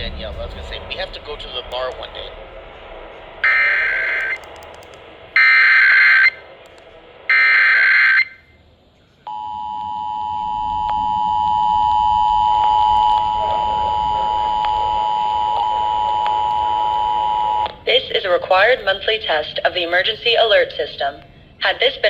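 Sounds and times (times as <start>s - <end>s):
steady two-tone attention signal: 3.4s - 4.5s, 9.3s - 17.7s
harsh data screech: 3.4s - 4.6s.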